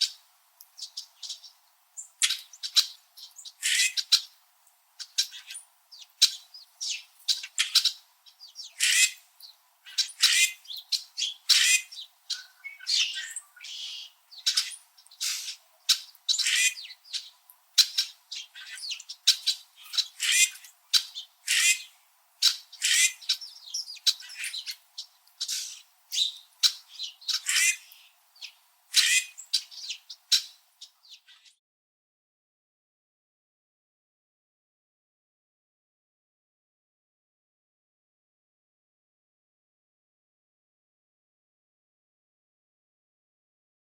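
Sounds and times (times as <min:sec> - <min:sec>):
blackbird flock chirping: 0:00.0 - 0:04.4, 0:05.0 - 0:31.5.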